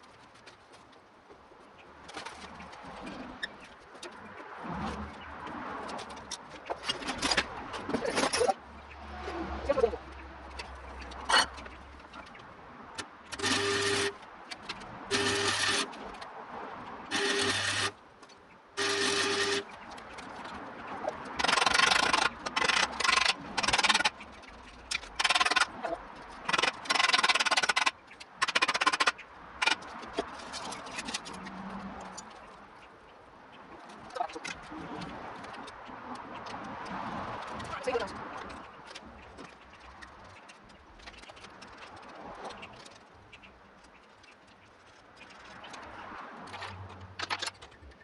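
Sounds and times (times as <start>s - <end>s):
electric metalworking tool bursts: 13.4s - 14.1s, 15.1s - 15.9s, 17.1s - 17.9s, 18.8s - 19.6s.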